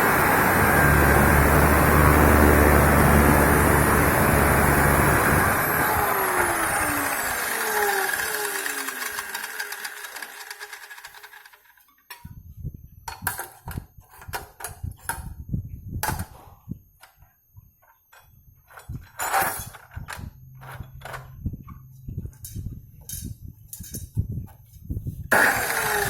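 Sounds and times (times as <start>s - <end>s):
low hum: 0.0s - 9.4s
saw motor winding down: 0.0s - 11.7s, 25.3s - 26.0s.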